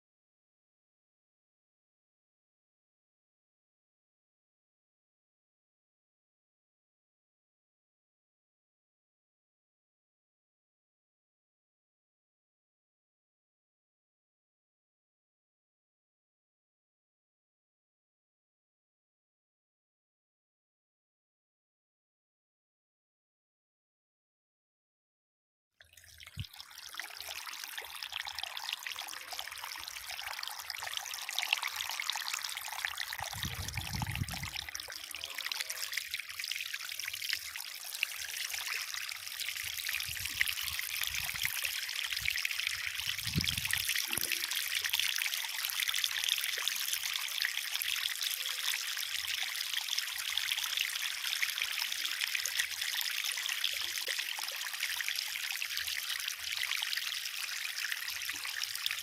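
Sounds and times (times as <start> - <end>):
water trickling and splashing: 25.8 - 59.0.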